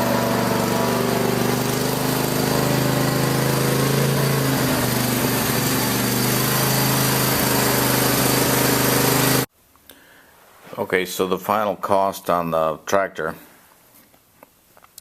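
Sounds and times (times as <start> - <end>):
lawn tractor engine running: 0.0 - 9.5.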